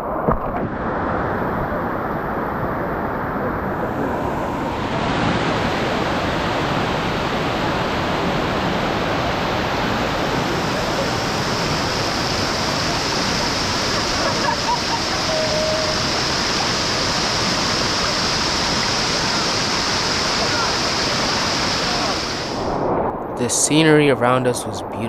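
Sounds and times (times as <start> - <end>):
water cascading over rocks: 4.6 - 22.6.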